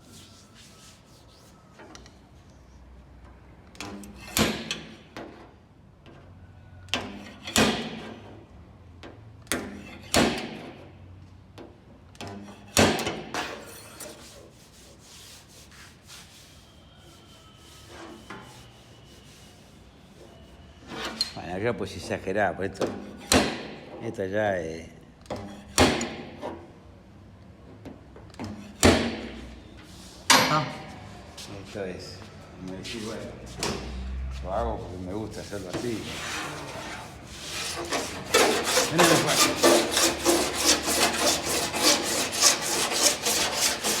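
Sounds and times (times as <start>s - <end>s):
file rasping on sheet metal: 35.3s - 44.0s.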